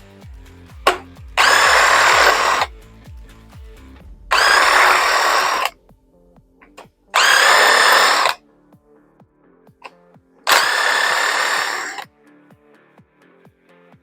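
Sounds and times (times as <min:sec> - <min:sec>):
background music with a beat: 0:00.0 - 0:14.0
power tool whining: 0:00.9 - 0:02.7, 0:04.3 - 0:05.7, 0:07.2 - 0:08.4, 0:10.5 - 0:12.0.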